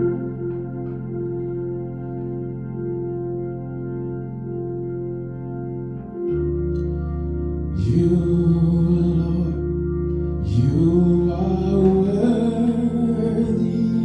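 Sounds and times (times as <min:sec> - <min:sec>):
sustained organ chords: 0:00.0 - 0:14.0
person singing gospel: 0:07.7 - 0:14.0.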